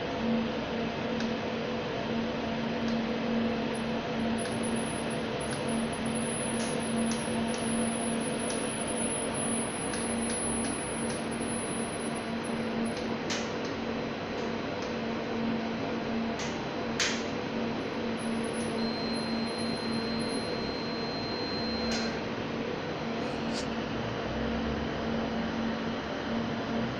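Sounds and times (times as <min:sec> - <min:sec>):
faint high whine: 0:17.9 - 0:22.3.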